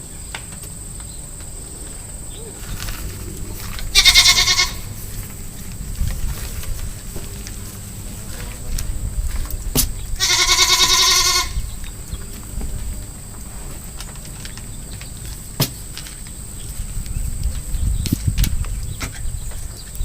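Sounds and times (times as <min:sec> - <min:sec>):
goat bleating: 0:03.9 - 0:05.0, 0:10.2 - 0:11.7.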